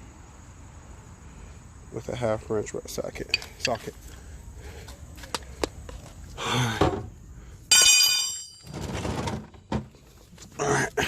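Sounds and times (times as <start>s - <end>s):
sharp metallic clank: 7.7s - 8.8s.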